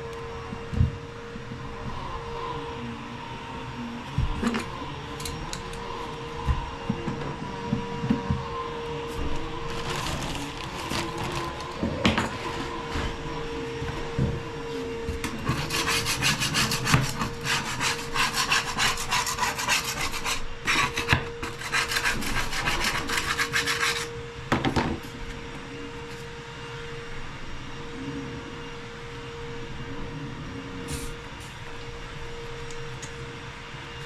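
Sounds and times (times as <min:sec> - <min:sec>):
hand tool rubbing or sawing: 0:15.2 - 0:24.1.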